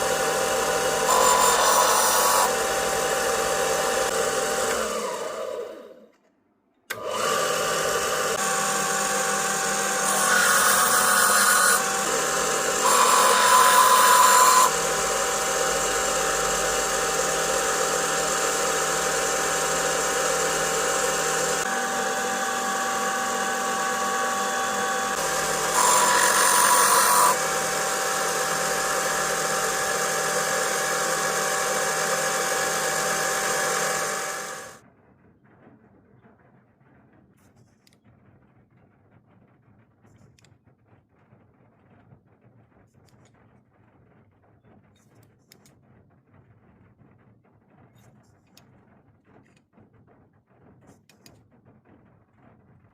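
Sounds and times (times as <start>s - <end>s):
power tool motor whining: 0.0s - 6.2s, 6.9s - 34.8s.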